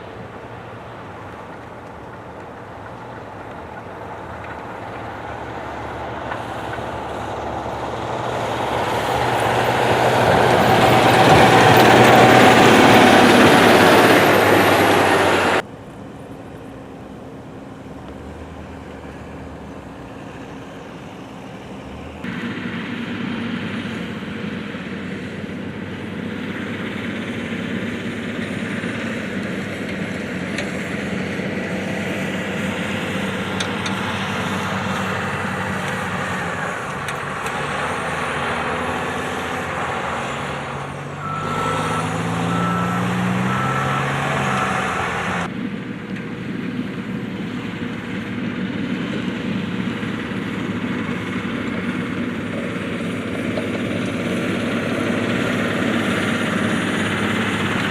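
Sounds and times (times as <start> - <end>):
vehicle road and engine noise: 0.0 - 57.9
short electronic beeps: 41.2 - 45.1.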